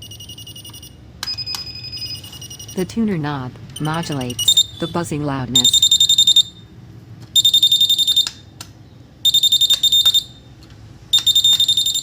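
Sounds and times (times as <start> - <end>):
rapid high-pitched beeping: 3.8 - 6.4.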